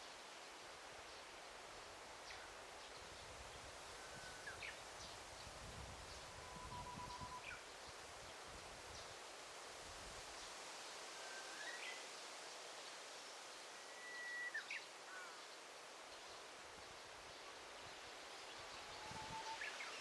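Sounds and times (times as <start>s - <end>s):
outdoor background hiss: 0.0s - 20.0s.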